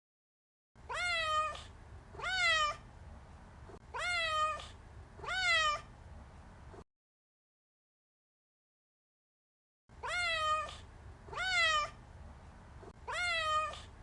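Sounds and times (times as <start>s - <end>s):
cat meowing: 0.8s - 2.8s, 3.9s - 5.9s, 10.0s - 12.0s, 13.0s - 13.9s
low steady hum: 0.8s - 6.8s, 9.9s - 14.0s.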